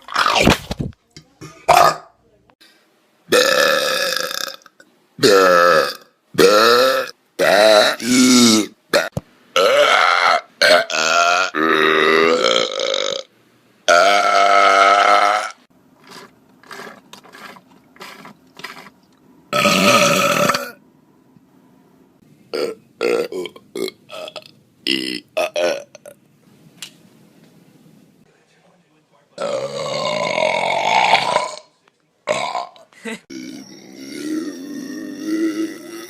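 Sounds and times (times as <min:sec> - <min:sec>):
people belching: 0:01.7 - 0:02.1, 0:03.3 - 0:13.3, 0:13.9 - 0:15.6, 0:19.6 - 0:20.8, 0:22.6 - 0:26.1, 0:29.4 - 0:31.7, 0:32.3 - 0:36.0.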